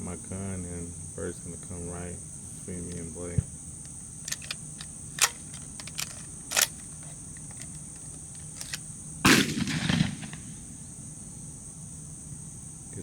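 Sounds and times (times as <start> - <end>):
crickets and insects buzzing: 0.0 - 13.0
small clicks: 3.8 - 8.8
shotgun shot: 8.6 - 10.8.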